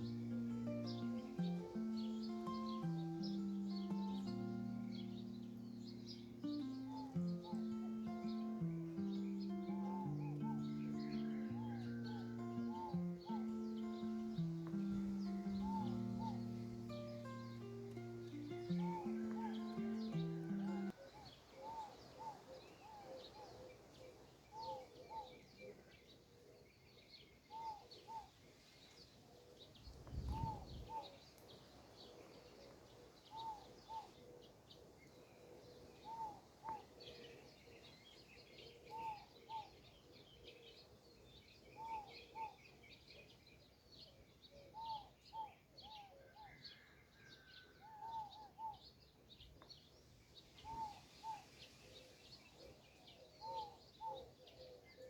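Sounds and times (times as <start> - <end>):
bird repeating short call: 0.0 - 20.9
high bird chirps: 0.0 - 20.9.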